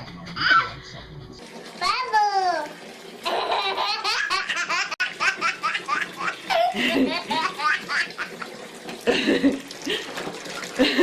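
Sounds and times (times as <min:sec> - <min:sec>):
baby laughing hysterically: 0:03.2 - 0:09.6.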